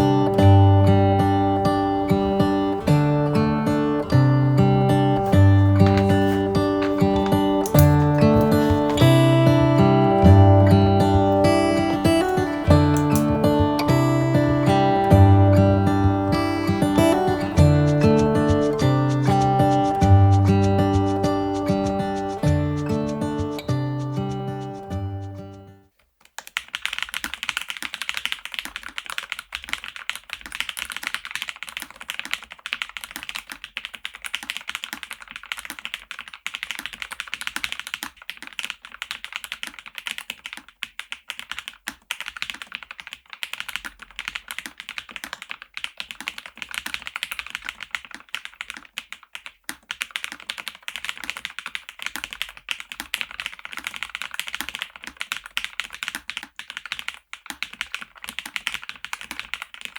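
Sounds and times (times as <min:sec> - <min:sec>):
music: 0:00.0 - 0:25.8
mechanical keyboard typing: 0:04.8 - 0:59.9.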